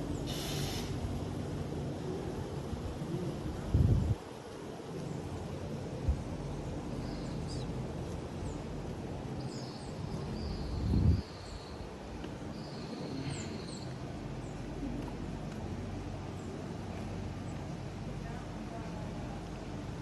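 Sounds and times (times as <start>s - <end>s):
low mechanical hum: 0.0s - 20.0s
small birds chirping: 6.8s - 7.8s, 9.4s - 14.8s.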